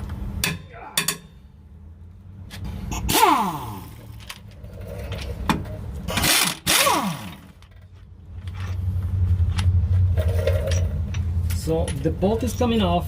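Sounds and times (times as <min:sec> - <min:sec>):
power wrench whirring: 0:06.1 - 0:07.6.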